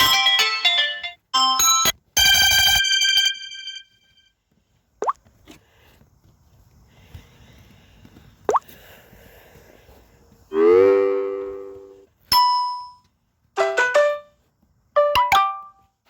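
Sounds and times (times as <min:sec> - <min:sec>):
bell-like ding: 0:12.3 - 0:13.0.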